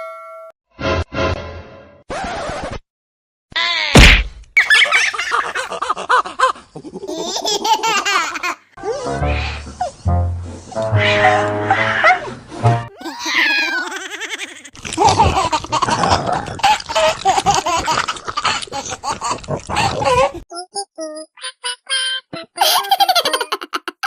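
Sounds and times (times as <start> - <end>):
high-pitched cartoon giggle: 4.6 - 9.1, 12.9 - 24.0.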